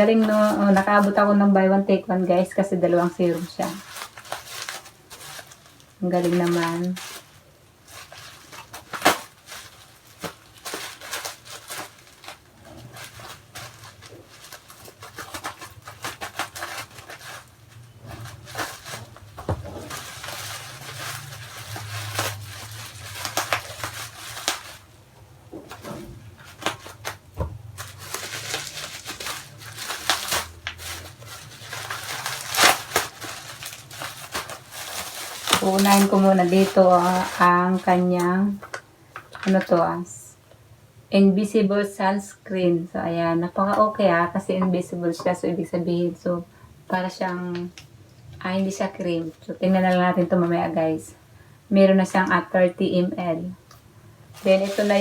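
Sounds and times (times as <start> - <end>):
plastic and cardboard clicks and rustles: 3.1 - 39.9.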